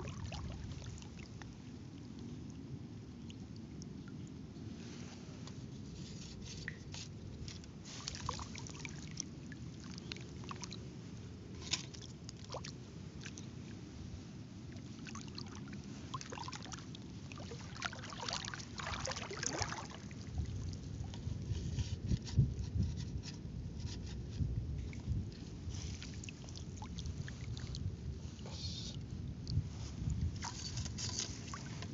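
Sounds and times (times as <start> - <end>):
small splashes: 0.0 - 1.6, 6.6 - 10.8, 14.7 - 21.2, 25.8 - 27.8
water trickling and sloshing: 0.0 - 31.9
steady low rumble: 23.5 - 30.4.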